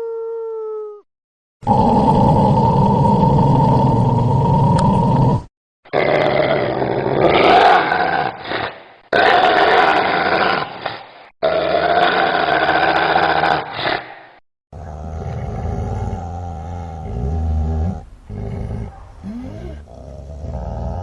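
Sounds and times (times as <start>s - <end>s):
dog growling: 14.8s - 21.0s.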